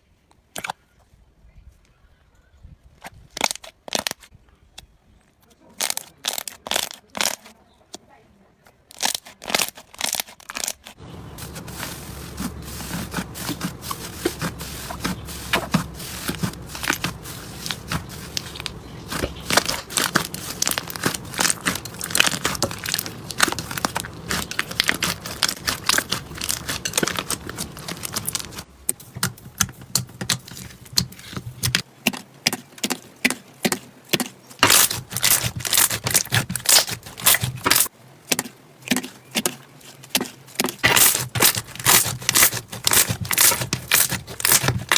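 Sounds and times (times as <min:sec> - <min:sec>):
slime crackling and popping: 0:05.8 - 0:07.5, 0:08.9 - 0:11.0, 0:11.6 - 0:31.8, 0:34.6 - 0:37.9, 0:40.8 - 0:44.9.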